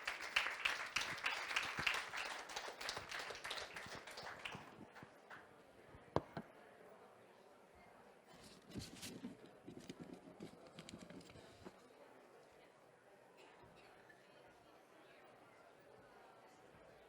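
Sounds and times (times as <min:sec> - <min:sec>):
audience applause: 0:00.0 - 0:05.4.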